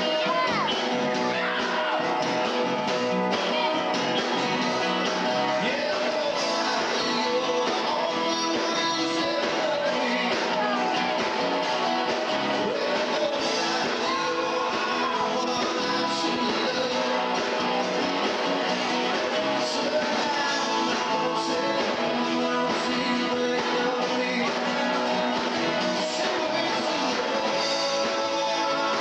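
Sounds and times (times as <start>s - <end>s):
person singing: 0.0s - 29.0s
rock band playing live: 0.0s - 29.0s.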